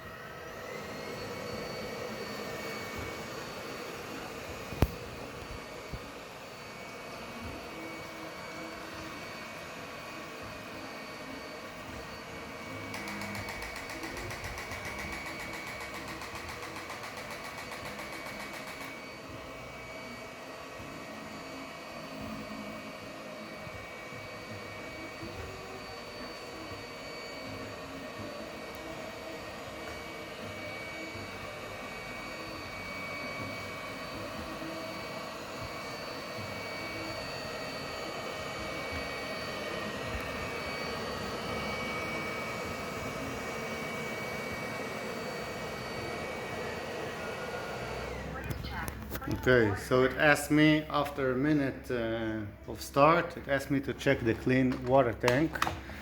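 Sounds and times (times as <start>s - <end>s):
robot floor cleaner motor hum: 0.0s - 50.8s.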